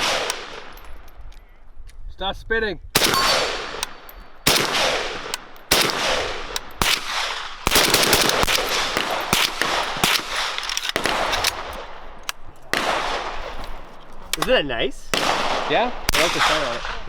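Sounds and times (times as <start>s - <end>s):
gunshots with echo: 0.0s - 0.8s, 3.0s - 12.1s, 12.7s - 13.5s, 15.1s - 17.0s.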